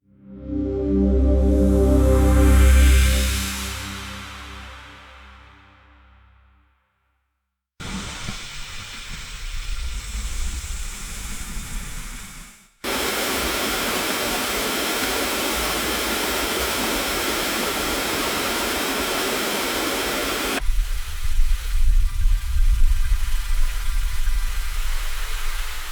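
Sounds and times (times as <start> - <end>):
steady hissing noise: 7.8 - 25.9.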